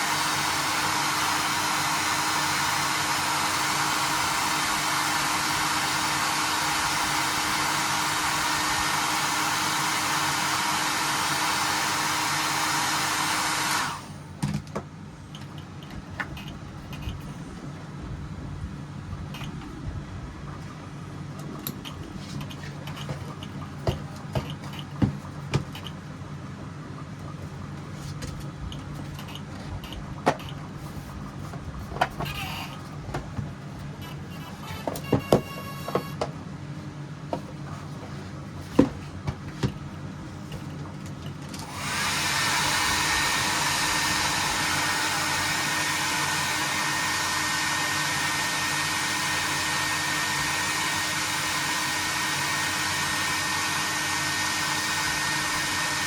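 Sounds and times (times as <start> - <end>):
blower-like electric motor: 0.0 - 14.3, 34.0 - 36.3, 41.5 - 56.0.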